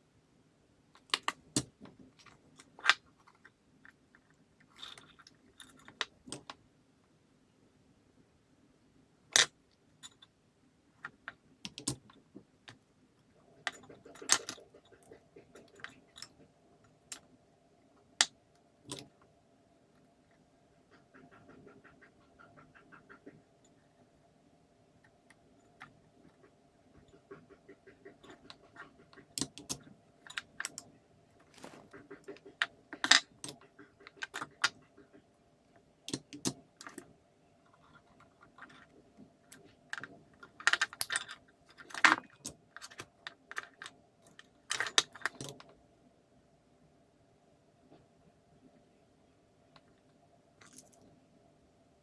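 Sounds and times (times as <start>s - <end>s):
faint steady hum: 0.0s - 52.0s
small parts clicking and rattling: 1.0s - 6.6s, 11.0s - 12.8s, 13.5s - 17.3s, 28.1s - 35.0s, 36.1s - 37.1s, 37.7s - 45.7s, 50.6s - 51.1s.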